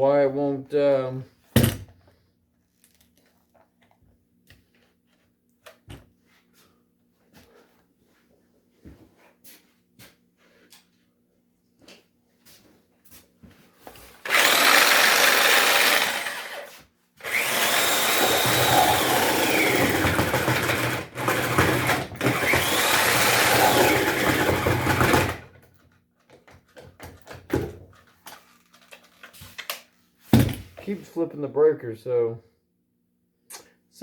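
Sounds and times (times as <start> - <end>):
power tool motor whining: 14.2 - 25.5.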